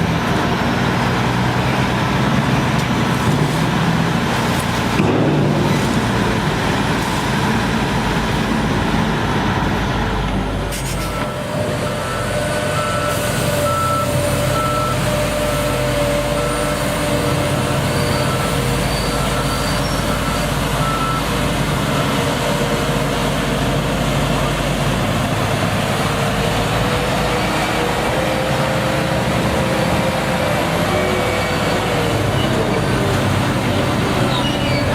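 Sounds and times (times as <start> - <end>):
diesel engine running: 0.0 - 34.9
reversing alarm beeping: 11.1 - 22.2.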